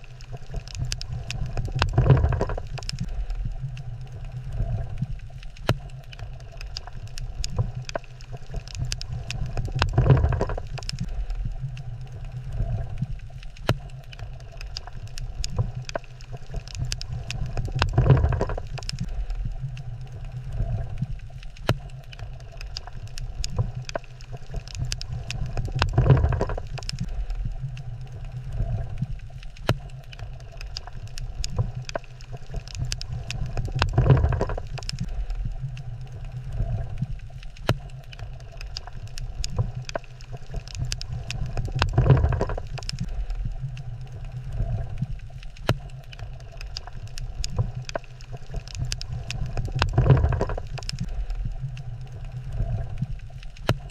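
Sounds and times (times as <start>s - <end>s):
low underwater rumble: 0.0s - 53.9s
sharp clicks and crackles: 0.0s - 53.9s.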